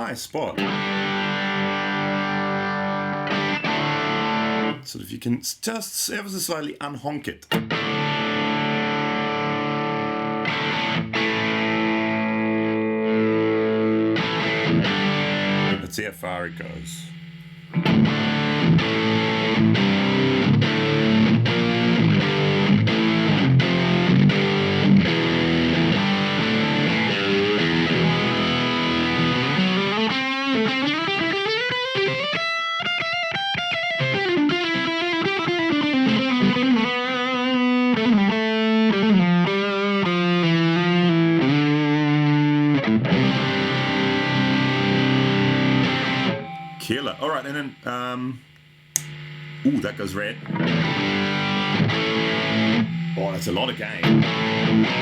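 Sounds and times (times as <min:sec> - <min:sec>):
distorted electric guitar: 0:00.0 - 0:04.9, 0:07.3 - 0:55.0.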